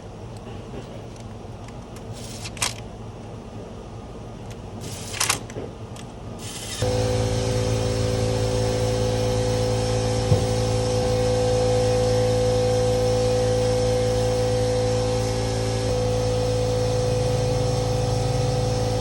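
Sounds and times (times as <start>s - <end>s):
motor humming: 6.4s - 19.0s.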